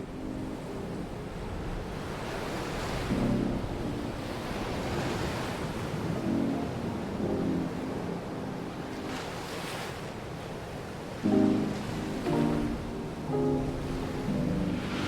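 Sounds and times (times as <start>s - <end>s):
soft music chords: 0.0s - 1.4s, 3.1s - 4.8s, 6.1s - 9.5s, 11.2s - 15.0s
ocean waves washing ashore: 0.0s - 15.0s.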